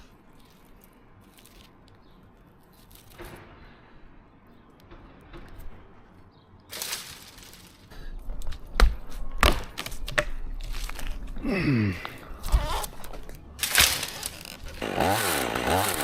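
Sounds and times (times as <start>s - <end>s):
wood cracking and breaking: 6.7s - 11.3s, 12.5s - 16.0s.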